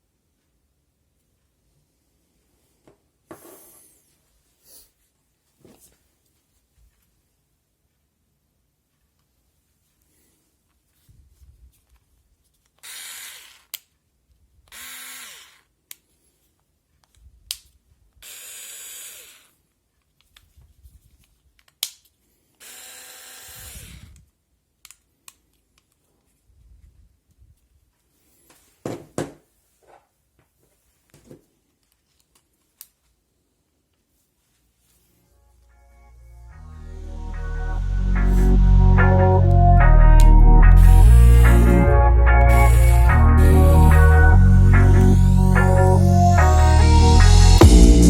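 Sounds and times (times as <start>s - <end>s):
cordless screwdriver motor: 12.8s - 13.8s, 14.7s - 15.7s, 18.2s - 19.6s, 22.6s - 24.2s.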